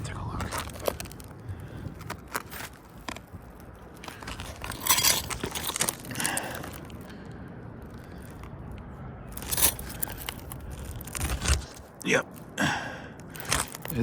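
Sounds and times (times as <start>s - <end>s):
tool scraping under roof shingle: 0.4s - 7.1s.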